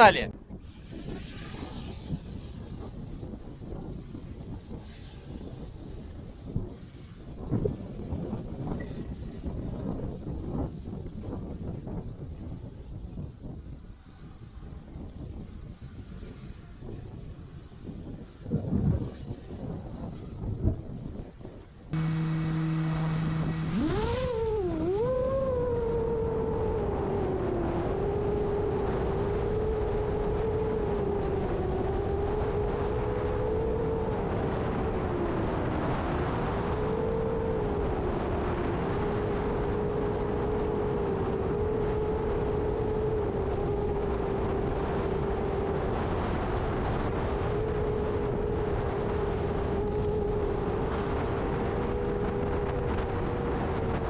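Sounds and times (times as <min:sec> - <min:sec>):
wind rumble: 0:00.0 - 0:54.0
quadcopter motors whining: 0:22.0 - 0:54.0.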